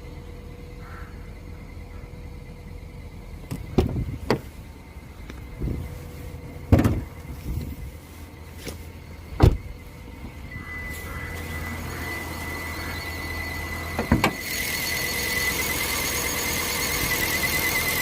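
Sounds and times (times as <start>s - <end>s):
engine low hum: 0.0s - 18.0s
sharp knocks and clunks: 6.7s - 7.1s, 14.0s - 14.4s
high steady whistle: 9.2s - 18.0s.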